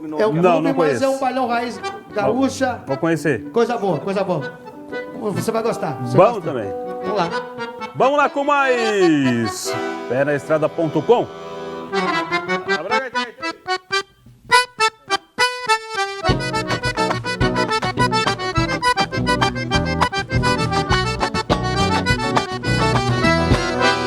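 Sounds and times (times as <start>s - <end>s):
accordion playing quick notes: 0.5s - 24.0s
live band playing dance tune: 16.1s - 24.0s.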